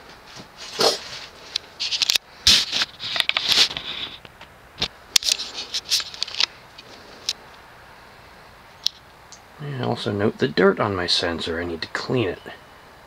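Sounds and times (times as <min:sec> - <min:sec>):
scraping rustling bursts: 0:00.2 - 0:04.5, 0:05.3 - 0:07.3.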